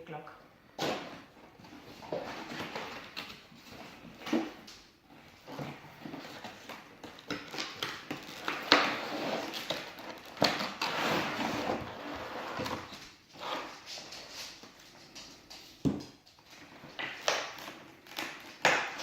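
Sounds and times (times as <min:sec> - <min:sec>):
packaging rustling: 0:05.4 - 0:13.0.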